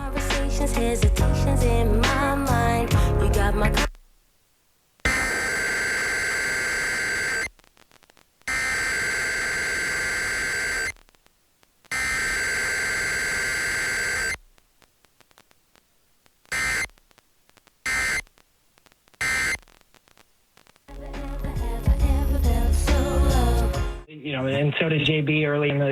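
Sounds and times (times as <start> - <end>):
harsh buzzing data bursts: 5.0 - 22.4.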